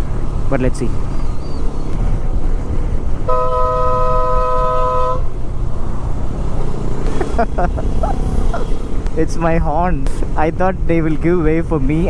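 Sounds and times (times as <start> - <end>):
road rumble: 0.0 - 12.0
two-tone motorcycle horn: 3.3 - 5.3.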